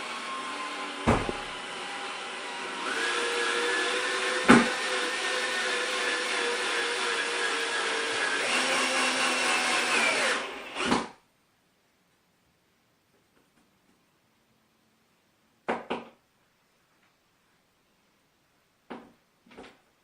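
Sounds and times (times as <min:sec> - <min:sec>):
cordless drill motor running: 0:00.1 - 0:10.9
sharp knocks: 0:01.1 - 0:01.6.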